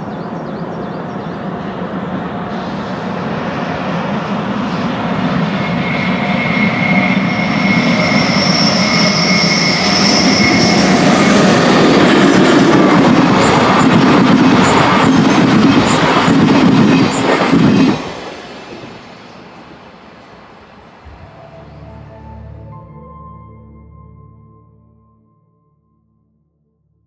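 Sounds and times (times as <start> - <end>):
electric train passing: 0.0 - 23.7
wheels clacking over rails: 11.2 - 19.1
thin high tone: 20.2 - 24.5.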